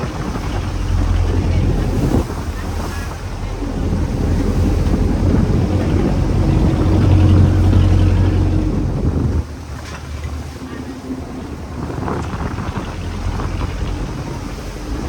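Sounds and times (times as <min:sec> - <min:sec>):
boat engine running: 0:00.0 - 0:15.0
water noise: 0:00.0 - 0:15.0
wind: 0:00.0 - 0:15.0.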